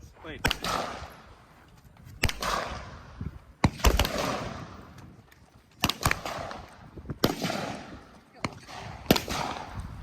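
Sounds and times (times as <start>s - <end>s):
gunshots with rolling echo: 0.4s - 1.4s, 2.2s - 5.0s, 5.8s - 9.8s.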